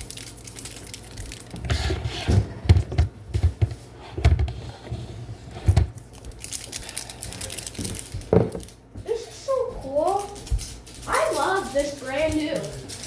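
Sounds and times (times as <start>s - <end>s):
packaging torn and crinkled: 6.3s - 8.3s.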